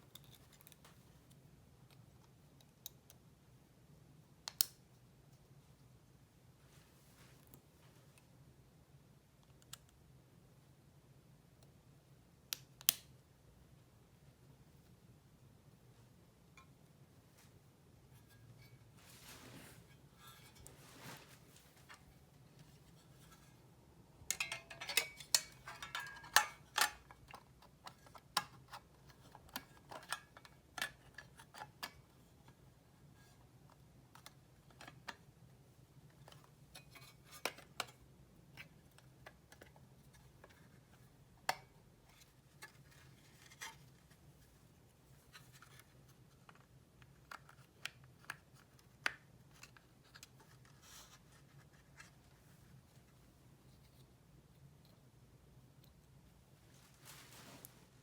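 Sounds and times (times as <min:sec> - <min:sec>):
hand tools clicking and scraping: 0:24.3 - 0:27.5.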